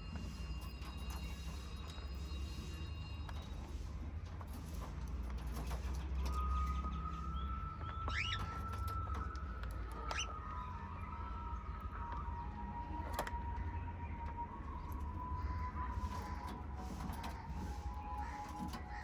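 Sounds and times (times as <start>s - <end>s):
birds chirping: 0.0s - 19.0s
steady whistle-like tone: 6.4s - 16.2s.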